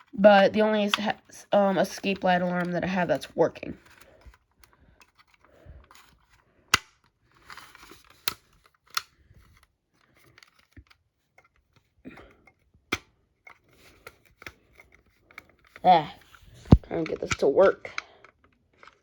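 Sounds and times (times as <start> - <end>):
plastic clicks and knocks: 10.3 - 19.0.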